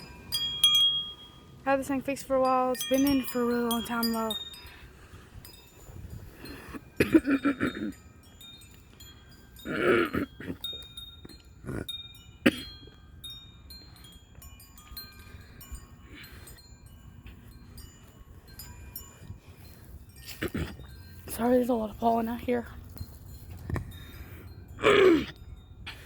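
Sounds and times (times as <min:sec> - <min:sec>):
wind chimes ringing: 0:00.0 - 0:26.0
person coughing: 0:07.0 - 0:08.0, 0:09.7 - 0:10.6, 0:12.4 - 0:12.9, 0:24.8 - 0:25.3.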